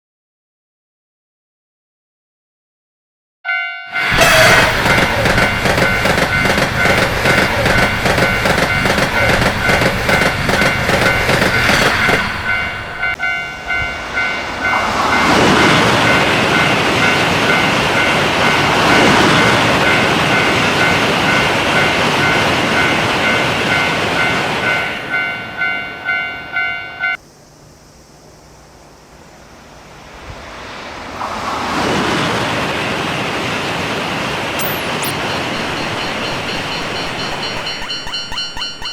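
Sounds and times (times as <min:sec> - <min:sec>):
railroad crossing bell ringing: 0:03.5 - 0:27.2, 0:34.6 - 0:38.9
train passing with wheel clatter: 0:03.5 - 0:27.2, 0:28.4 - 0:38.9
train approaching: 0:03.5 - 0:38.9.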